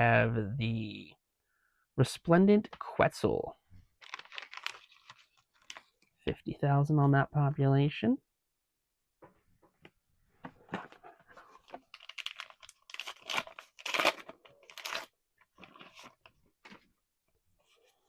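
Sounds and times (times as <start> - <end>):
wrapper tearing and crinkling: 4.0 - 6.0, 11.6 - 16.3.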